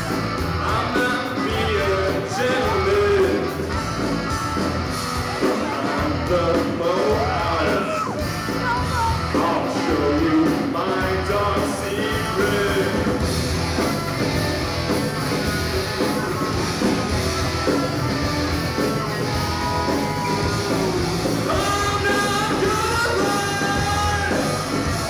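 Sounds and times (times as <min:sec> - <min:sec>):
electric guitar: 0:00.0 - 0:25.0
rock band playing: 0:00.0 - 0:25.0
person singing: 0:00.4 - 0:03.8, 0:05.3 - 0:13.2, 0:20.1 - 0:25.0.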